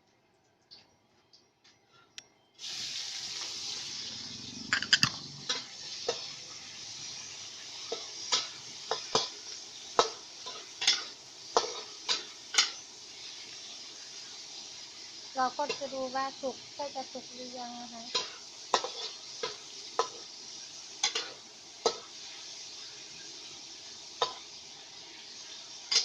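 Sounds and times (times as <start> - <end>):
seafood sizzling in hot oil: 2.6 - 26.0
metal spatula scraping wok: 4.7 - 14.1, 18.0 - 23.6.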